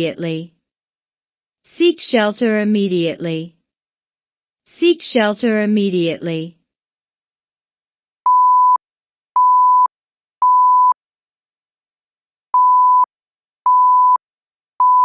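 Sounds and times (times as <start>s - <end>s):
electronic alert beeps: 14.8s - 15.0s.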